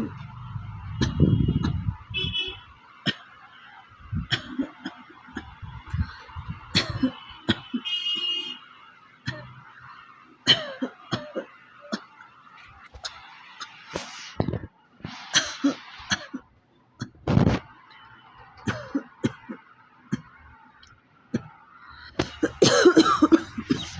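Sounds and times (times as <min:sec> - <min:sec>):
person coughing: 0:06.7 - 0:08.0, 0:10.4 - 0:12.1, 0:18.7 - 0:19.5, 0:22.2 - 0:23.9.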